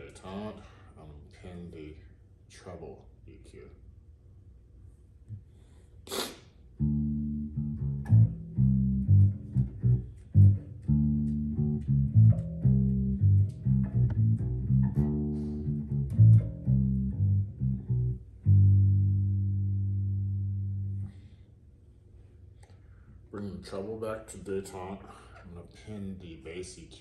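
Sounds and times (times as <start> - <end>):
electric bass plucked notes: 6.8 - 21.4.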